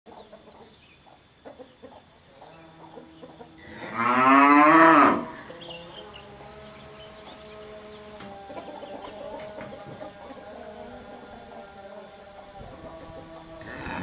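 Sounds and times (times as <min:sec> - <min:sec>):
cow mooing: 0:03.5 - 0:08.0, 0:13.6 - 0:14.0.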